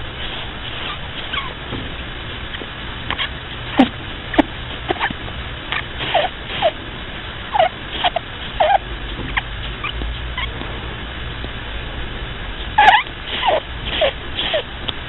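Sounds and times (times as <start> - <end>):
rabbit snoring squeaky whistles: 0.8 - 1.6, 6.0 - 6.8, 7.5 - 8.8, 12.8 - 14.7.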